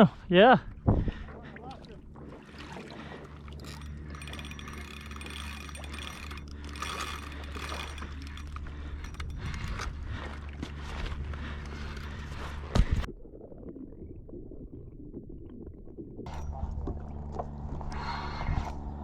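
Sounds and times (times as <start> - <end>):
fishing reel whirring rattle: 2.4 - 13.1.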